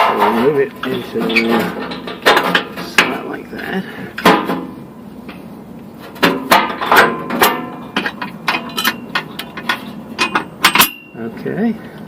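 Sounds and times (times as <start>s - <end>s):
metal hitch clanking: 0.0s - 3.3s, 6.1s - 11.3s.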